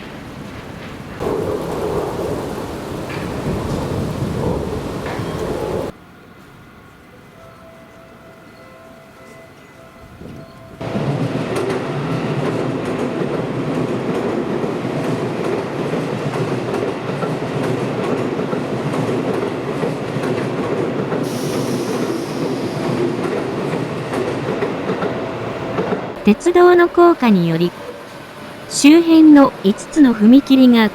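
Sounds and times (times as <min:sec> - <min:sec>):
train rumbling past: 0:00.0 - 0:30.9
high hiss: 0:21.3 - 0:23.9.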